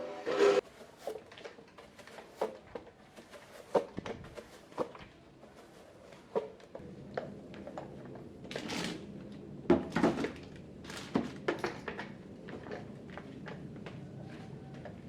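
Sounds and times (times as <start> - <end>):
handling knocks and clunks: 0.6 - 6.8, 9.6 - 12.8.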